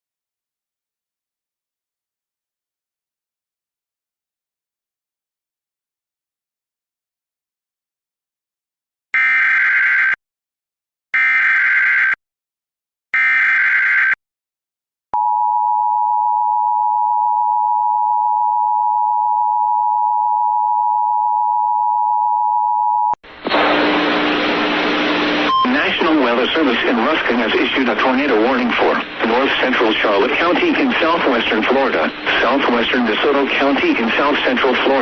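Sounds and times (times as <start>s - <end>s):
loud hissy noise: 23.3s - 35.0s
two-tone attention signal: 25.5s - 26.0s.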